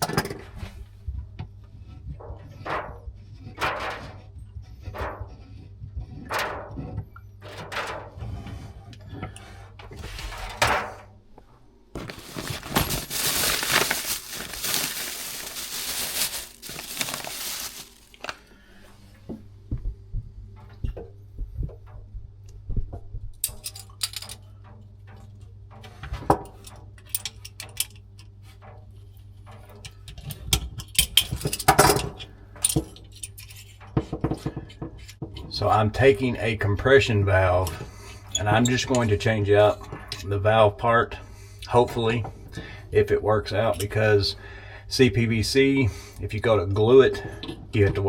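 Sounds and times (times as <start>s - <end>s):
steady low hum: 0.4s - 26.0s
metal tools clinking: 23.4s - 24.4s.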